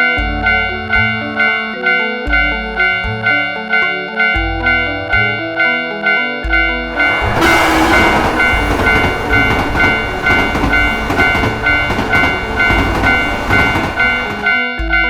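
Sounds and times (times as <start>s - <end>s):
level-crossing bell ringing: 0.0s - 15.0s
passing train clatter: 6.5s - 14.8s.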